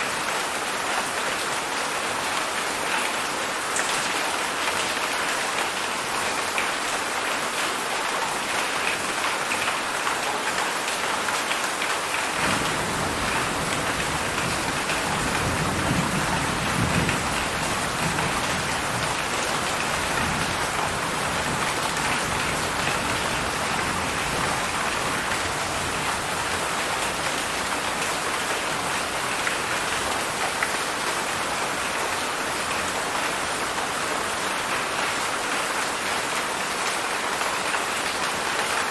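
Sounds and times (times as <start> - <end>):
heavy rain hissing: 12.3 - 30.6.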